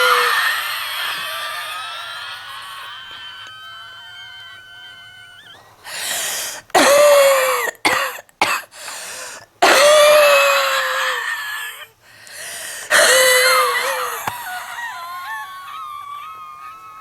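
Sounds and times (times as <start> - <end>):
person coughing harshly: 6.8 - 8.7, 9.6 - 10.2.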